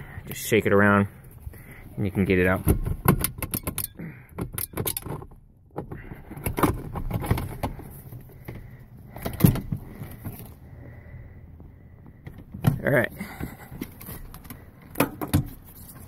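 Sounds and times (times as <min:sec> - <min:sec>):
metal clicking and rattling: 0:03.0 - 0:07.8.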